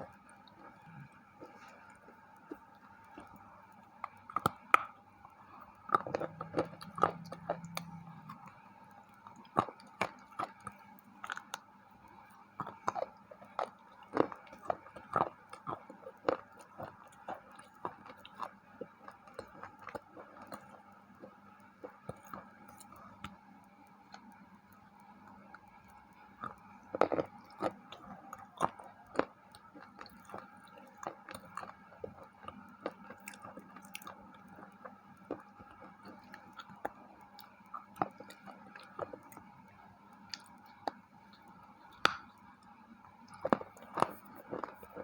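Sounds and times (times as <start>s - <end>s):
wet mouth sounds: 0.0s - 11.6s.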